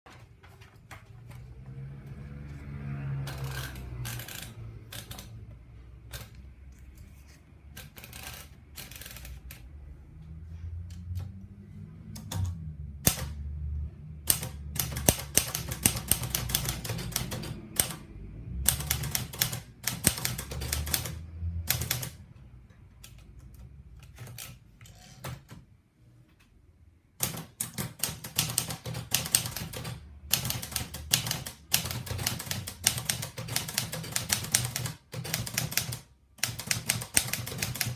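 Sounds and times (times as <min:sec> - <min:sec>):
typewriter keystrokes: 0:03.3 - 0:05.4, 0:07.8 - 0:09.6, 0:14.3 - 0:18.1, 0:18.7 - 0:22.2, 0:27.2 - 0:37.9.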